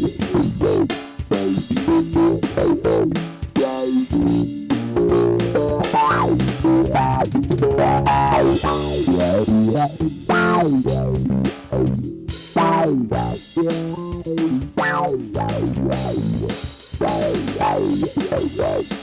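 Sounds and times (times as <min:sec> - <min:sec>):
bass line: 0:00.0 - 0:19.0
drum kit: 0:00.0 - 0:19.0
sliding guitar notes: 0:00.0 - 0:19.0.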